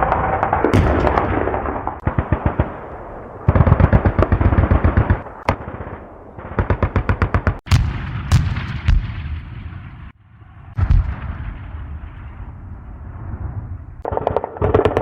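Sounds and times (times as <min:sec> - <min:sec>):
automatic gunfire: 0:14.1 - 0:15.0.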